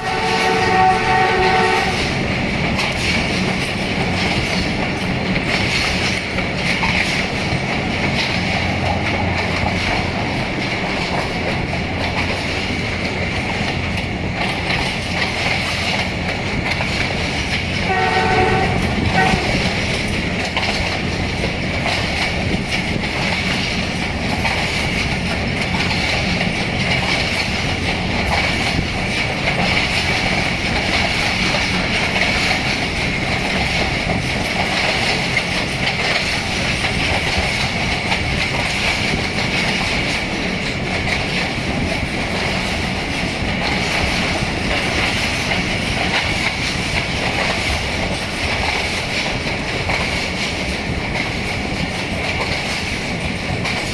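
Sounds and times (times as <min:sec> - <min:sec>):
locomotive horn: 0:00.0 - 0:02.2, 0:17.8 - 0:19.8
train rumbling along track: 0:00.0 - 0:53.9
wheels clacking over rail joints: 0:00.0 - 0:53.9.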